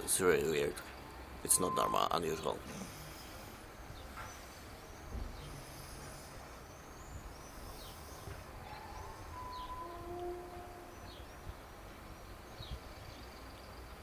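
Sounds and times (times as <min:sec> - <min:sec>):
small birds chirping: 0:00.1 - 0:14.0
faint drawn-out tone: 0:01.5 - 0:03.6, 0:07.6 - 0:11.5.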